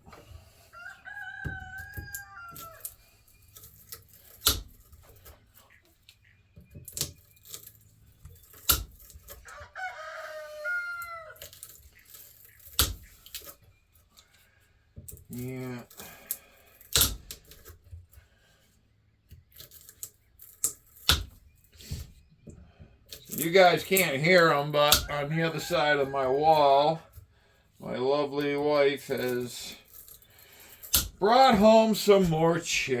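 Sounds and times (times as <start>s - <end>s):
rooster crowing: 0.7s - 2.9s, 9.4s - 11.4s
cutters snipping copper wire: 3.6s - 5.0s, 8.4s - 9.4s, 12.6s - 13.5s, 16.2s - 17.8s, 30.0s - 31.2s.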